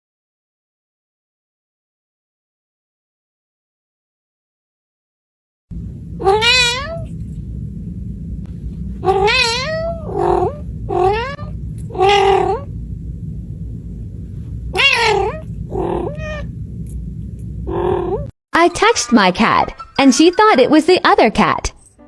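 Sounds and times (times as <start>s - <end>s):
steady low rumble: 5.7s - 18.7s
cat meowing: 6.2s - 7.1s, 9.0s - 12.7s, 14.8s - 16.5s.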